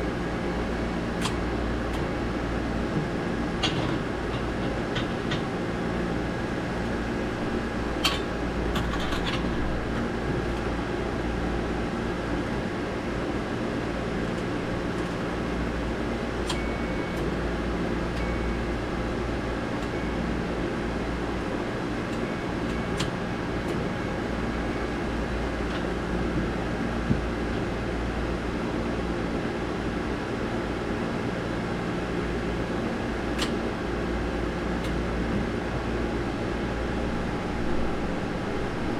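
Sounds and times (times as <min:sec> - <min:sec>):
machinery droning: 0:32.2 - 0:38.9.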